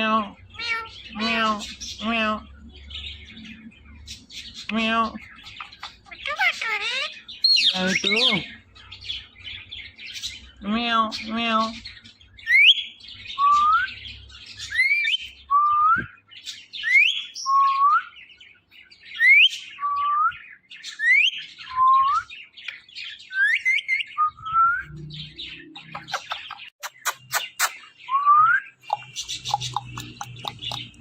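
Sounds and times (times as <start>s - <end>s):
parakeet calling: 0.0s - 15.4s, 22.7s - 28.0s, 28.6s - 31.0s.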